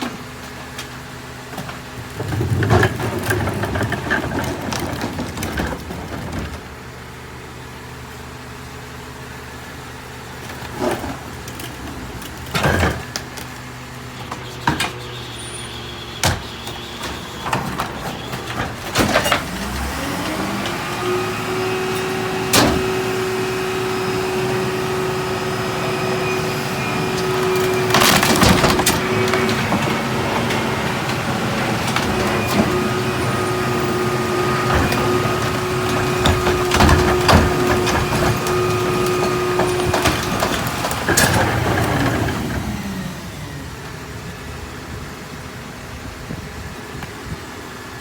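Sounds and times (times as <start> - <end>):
garbage truck packer whining: 0.0 - 48.0
wood cracking and splintering: 1.6 - 6.7, 27.2 - 32.8, 34.5 - 42.4.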